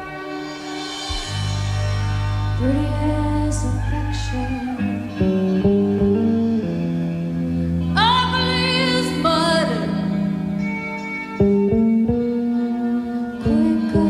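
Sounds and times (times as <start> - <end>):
live band music on radio: 0.0 - 14.0
woman singing: 2.6 - 5.3, 7.9 - 10.5, 13.2 - 14.0.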